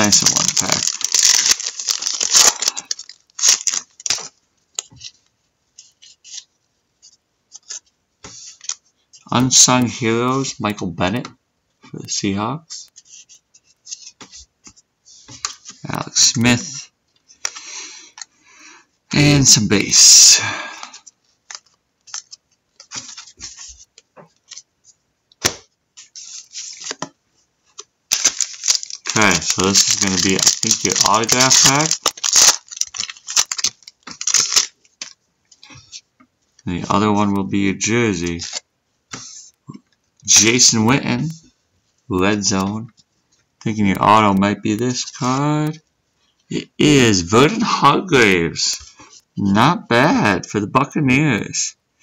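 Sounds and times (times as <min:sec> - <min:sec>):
trading cards rustling: 0:00.0 - 0:05.2, 0:21.0 - 0:24.6, 0:25.4 - 0:36.0, 0:38.2 - 0:39.5.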